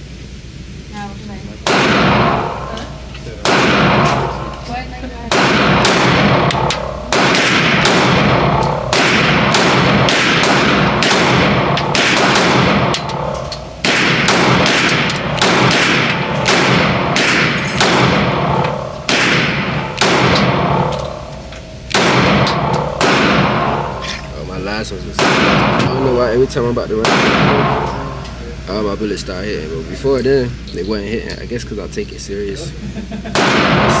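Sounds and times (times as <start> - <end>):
pistol shots echoing: 1.6 - 4.6, 5.3 - 24.1, 25.2 - 26.3, 27.0 - 28.0, 33.4 - 34.0.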